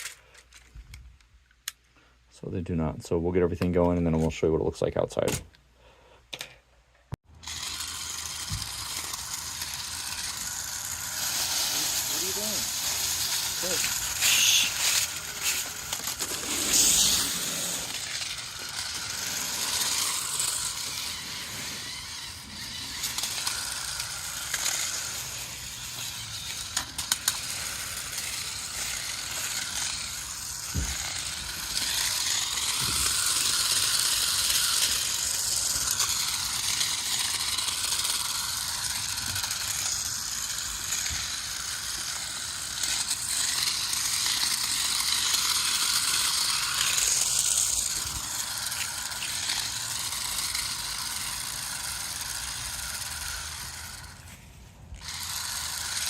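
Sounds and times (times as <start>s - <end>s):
toy car motors whirring: 0.0s - 2.0s, 6.3s - 56.0s.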